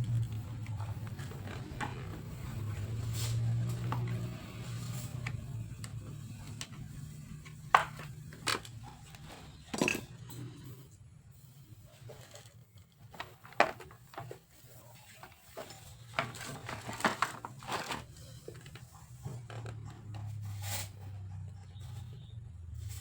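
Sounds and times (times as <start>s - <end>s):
small clicks taps and scrapes: 0.0s - 9.5s, 12.1s - 20.4s.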